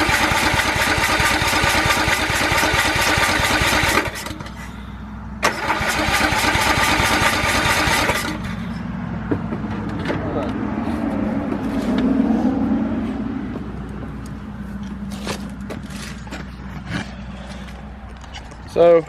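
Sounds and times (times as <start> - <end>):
engine starter cranking: 0.0 - 4.6, 5.4 - 8.6.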